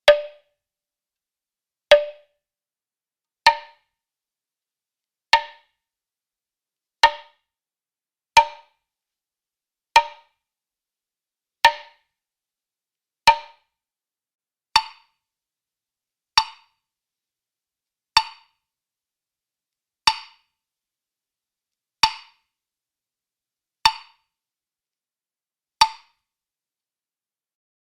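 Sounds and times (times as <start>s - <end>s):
woodblock hits: 0.0s - 0.5s, 1.9s - 2.3s, 3.5s - 3.8s, 5.4s - 5.7s, 7.0s - 7.4s, 8.4s - 8.7s, 10.0s - 10.2s, 11.7s - 12.0s, 13.3s - 13.6s, 14.8s - 15.0s, 16.4s - 16.7s, 18.2s - 18.4s, 20.1s - 20.4s, 22.0s - 22.4s, 23.9s - 24.2s, 25.8s - 26.2s.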